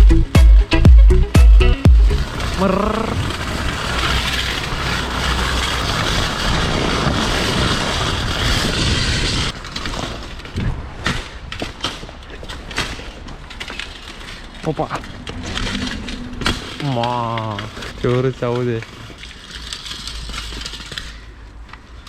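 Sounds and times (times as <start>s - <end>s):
bike rim grinding on ground: 2.0s - 10.5s.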